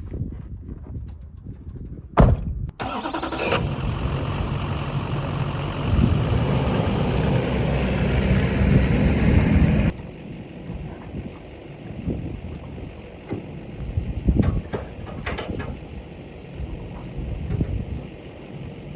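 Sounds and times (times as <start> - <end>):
truck door shutting: 2.2 - 4.0
truck engine running: 2.8 - 18.9.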